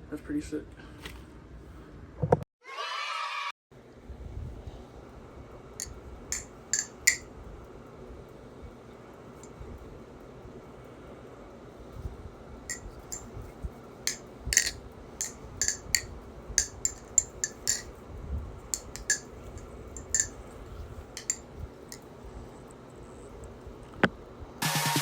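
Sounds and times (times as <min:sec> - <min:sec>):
butterfly knife metallic clicks: 0:05.8 - 0:07.2, 0:12.7 - 0:13.3, 0:14.1 - 0:17.9, 0:18.8 - 0:19.3, 0:20.0 - 0:20.3, 0:21.2 - 0:22.0.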